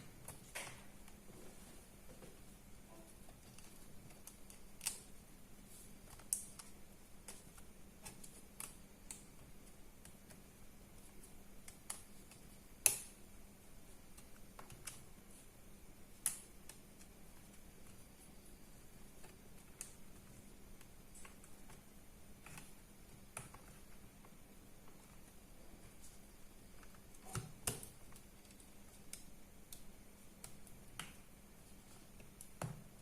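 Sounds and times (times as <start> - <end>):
laptop parts and tools clicking: 2.9 - 5.2, 6.0 - 13.2, 14.0 - 15.2, 19.0 - 33.0.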